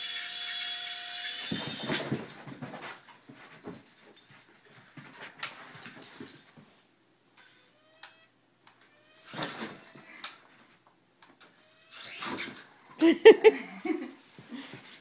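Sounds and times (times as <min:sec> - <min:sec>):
toy helicopter motor whining: 0:00.0 - 0:02.0, 0:08.9 - 0:10.3, 0:11.5 - 0:12.7
knocks and scuffling: 0:01.4 - 0:06.9.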